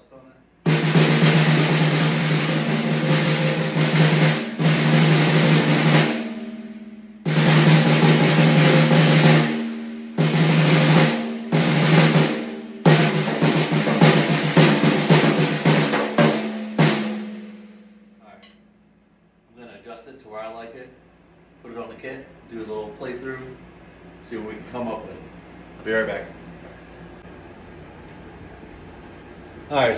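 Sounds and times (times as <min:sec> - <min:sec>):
snare drum rolls: 0:00.7 - 0:06.6, 0:07.3 - 0:17.8.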